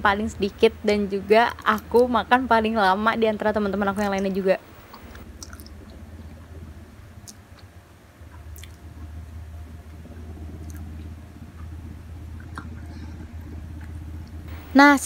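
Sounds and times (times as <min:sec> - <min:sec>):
low hum: 0:00.0 - 0:15.0
mouth clicks: 0:04.2 - 0:05.7, 0:08.3 - 0:08.8
chewing noodles: 0:04.9 - 0:06.0, 0:08.3 - 0:09.1.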